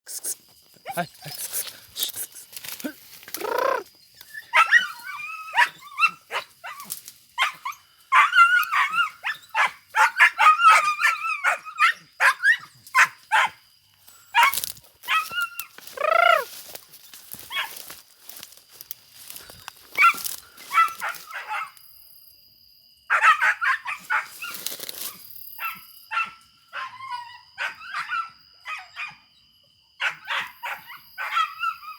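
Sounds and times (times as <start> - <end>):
dog yelping and barking: 3.6 - 13.6, 14.4 - 16.4, 17.5 - 17.8, 20.0 - 21.8, 23.1 - 24.6, 25.6 - 29.2, 30.0 - 31.9.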